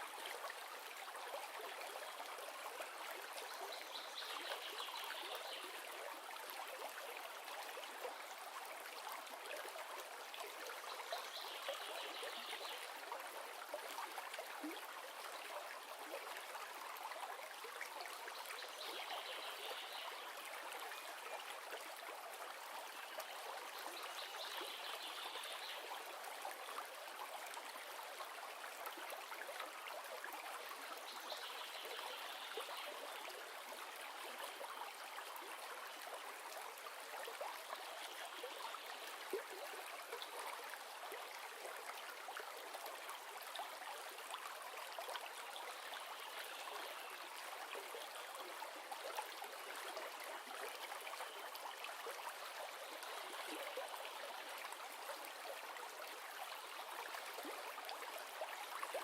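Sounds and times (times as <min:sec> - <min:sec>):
river water rushing and babbling: 0:00.0 - 0:59.0.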